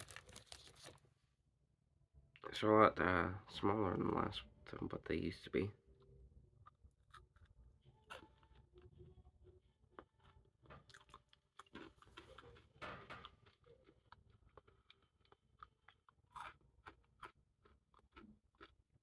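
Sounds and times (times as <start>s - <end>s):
chewing crunchy candy: 0.0s - 1.0s, 6.5s - 19.0s.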